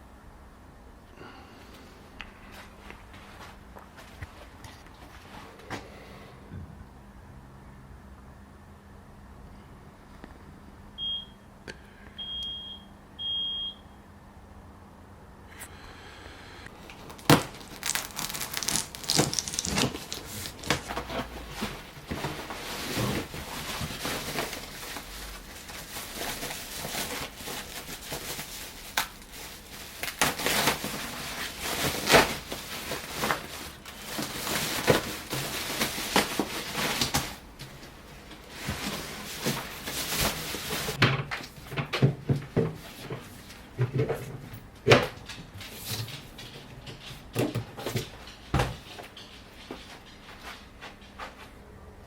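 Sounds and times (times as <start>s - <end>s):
bags rustling and crinkling: 16.8s - 41.0s.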